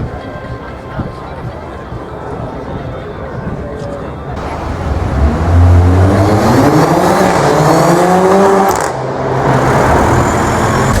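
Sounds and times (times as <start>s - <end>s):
sports car engine accelerating: 4.4s - 11.0s.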